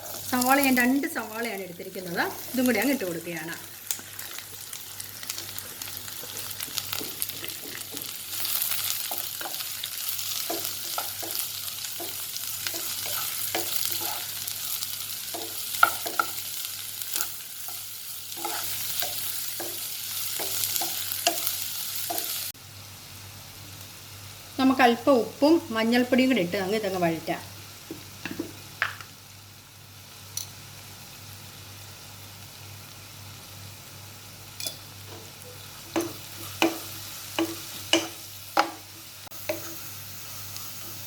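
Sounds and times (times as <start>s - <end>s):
onions sizzling in oil: 0.0s - 41.0s
spoon scraping a pan: 5.3s - 16.5s, 17.1s - 22.4s, 34.6s - 40.0s.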